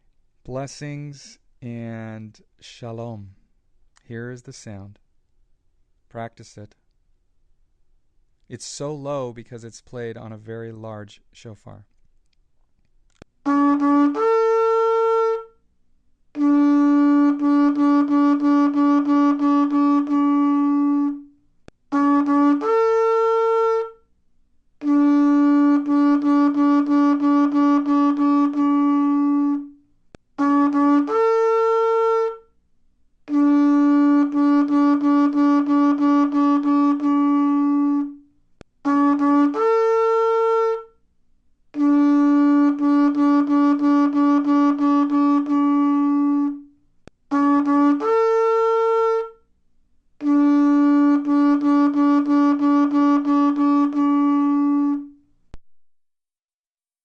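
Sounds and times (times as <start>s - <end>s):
shofar playing low call: 13.4s - 15.6s, 16.3s - 24.1s, 24.8s - 29.8s, 30.4s - 32.6s, 33.2s - 41.0s, 41.7s - 49.5s, 50.2s - 55.2s.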